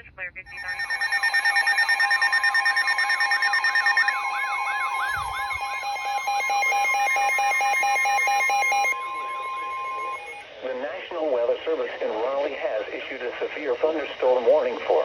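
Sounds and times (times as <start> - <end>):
electronic siren-like alert tones: 0.5 - 10.4.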